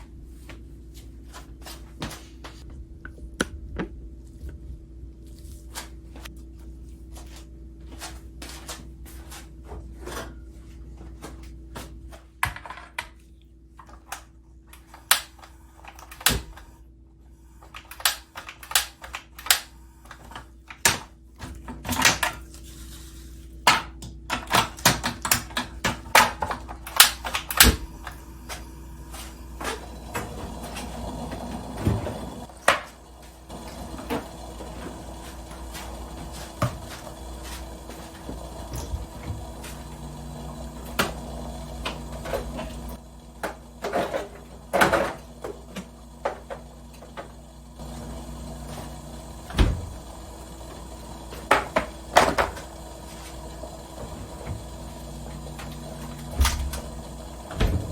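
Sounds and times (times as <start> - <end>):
steady low hum: 13.4 - 57.9.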